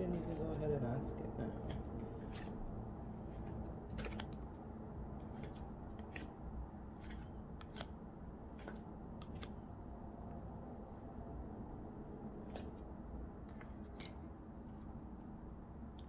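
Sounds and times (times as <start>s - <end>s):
cards being shuffled: 0.0s - 0.8s, 1.5s - 9.6s, 12.4s - 15.0s
low background noise: 0.0s - 16.0s.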